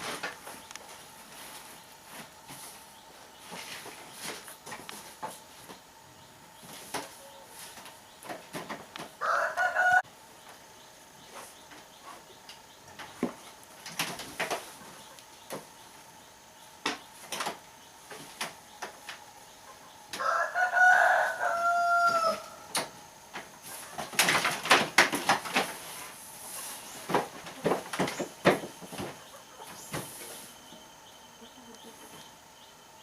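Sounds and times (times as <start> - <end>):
rooster crowing: 9.2 - 10.2, 20.2 - 22.7.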